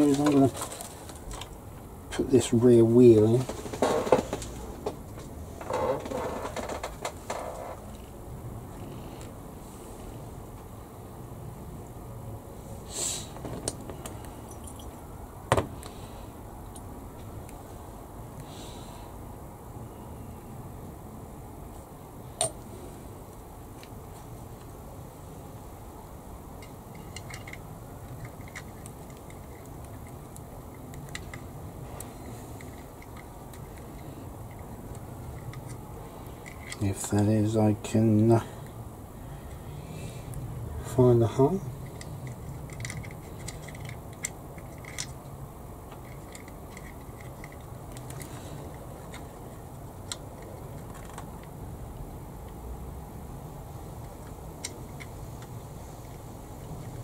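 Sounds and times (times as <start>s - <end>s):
low background hum: 0.0s - 57.0s
plastic model parts clicking: 26.6s - 31.4s, 41.8s - 45.2s, 45.9s - 49.3s.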